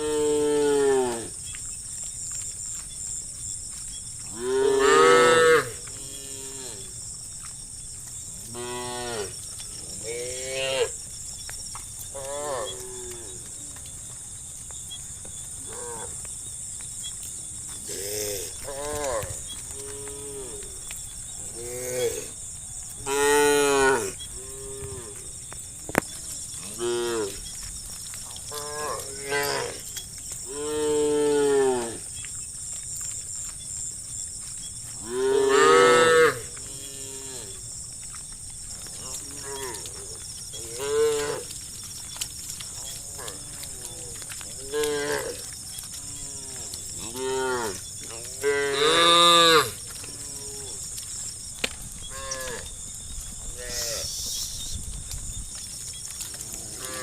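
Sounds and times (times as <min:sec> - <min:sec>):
cows mooing: 0:00.0 - 0:01.4, 0:04.3 - 0:06.9, 0:08.5 - 0:11.0, 0:12.1 - 0:13.5, 0:23.0 - 0:25.3, 0:26.6 - 0:27.5, 0:28.4 - 0:32.1, 0:35.0 - 0:37.6, 0:38.9 - 0:41.6, 0:42.7 - 0:50.8, 0:53.5 - 0:54.1, 0:56.4 - 0:57.0.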